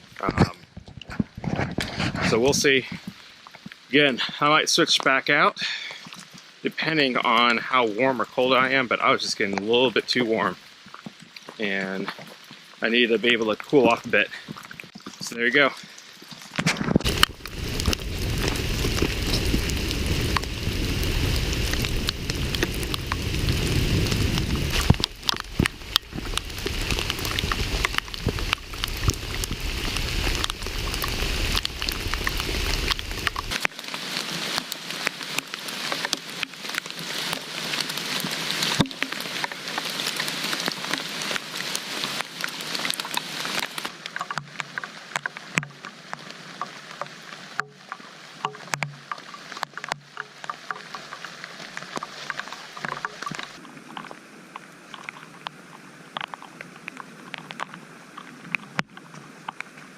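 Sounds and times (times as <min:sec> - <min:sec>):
steady rain with ticking drops: 0:00.0 - 0:59.9
low rumble: 0:17.0 - 0:33.6.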